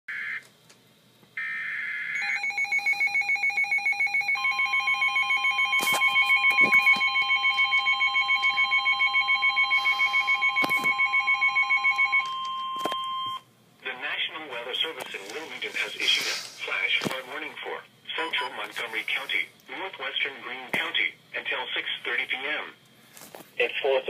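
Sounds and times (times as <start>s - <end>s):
steady warning alarm tone: 1.4s - 13.5s
pulsing two-pitch alarm beep: 2.2s - 13.4s.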